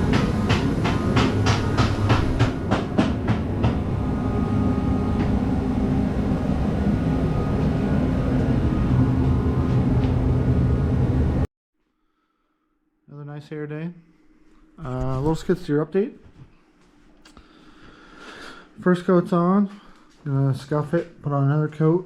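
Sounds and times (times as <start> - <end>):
steady mechanical drone: 0.0 - 11.5.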